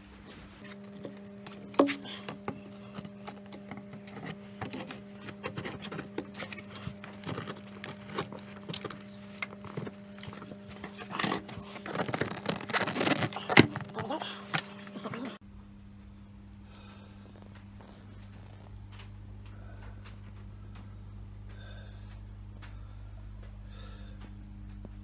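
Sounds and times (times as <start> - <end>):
low electrical hum: 0.0 - 25.0
knocks and scrapes handling wood: 0.3 - 15.4.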